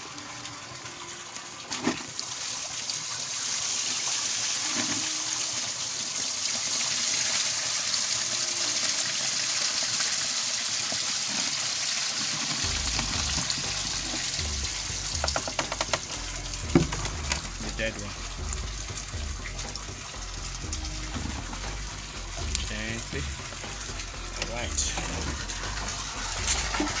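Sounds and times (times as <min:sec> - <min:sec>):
water pouring into pond: 0:00.0 - 0:27.0
low rumble: 0:12.6 - 0:27.0.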